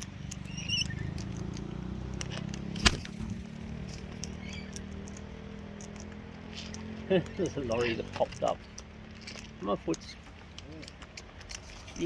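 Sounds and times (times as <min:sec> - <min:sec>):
high bird chirp: 0:00.0 - 0:01.4, 0:03.3 - 0:05.4
cockatoos pecking clicks: 0:00.0 - 0:12.0.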